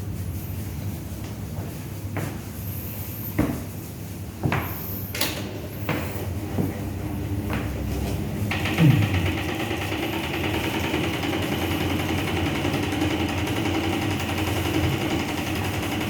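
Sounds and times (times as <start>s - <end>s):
electric hair clippers buzzing: 8.5s - 10.5s.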